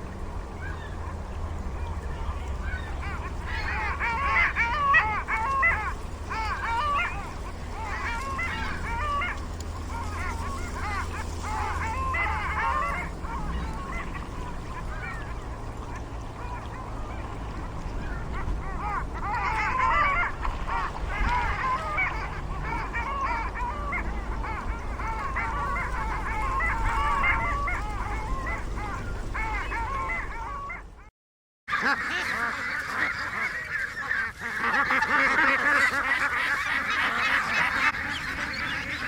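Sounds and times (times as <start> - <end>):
steady low rumble: 0.0 - 31.1
waterfowl calling: 0.0 - 31.1, 31.7 - 39.0.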